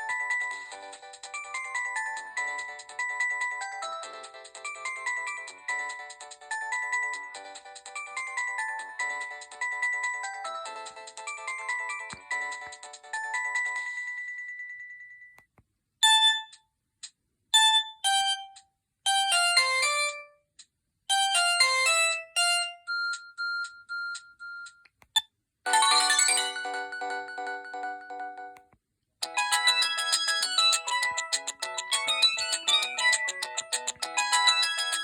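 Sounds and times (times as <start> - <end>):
polyphonic phone ringtones: 25.7 - 28.6, 29.2 - 35.0.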